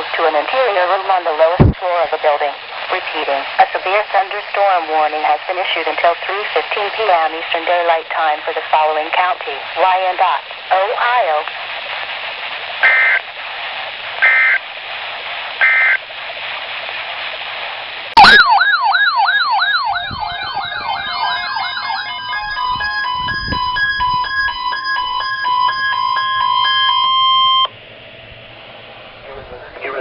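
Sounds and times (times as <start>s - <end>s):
radio hiss: 0.0s - 27.7s, 28.7s - 30.0s
electronic alarm whooping and beeping: 12.8s - 13.2s, 14.2s - 14.6s, 15.6s - 16.0s, 18.2s - 27.7s
two-tone data bursts: 12.8s - 13.4s, 14.2s - 14.6s, 15.6s - 16.1s, 18.2s - 27.7s.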